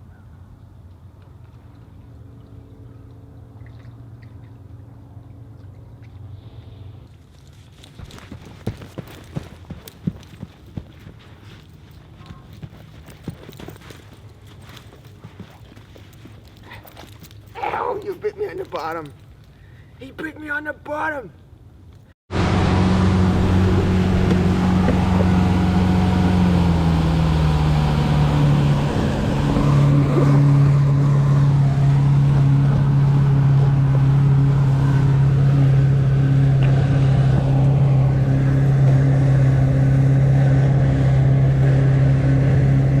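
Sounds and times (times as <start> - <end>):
boat motor running: 22.3 - 43.0.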